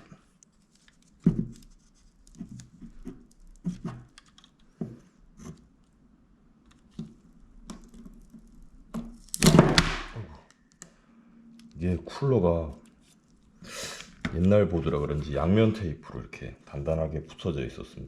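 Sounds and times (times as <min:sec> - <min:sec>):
hands tapping and scraping on laptop: 0:00.0 - 0:05.7.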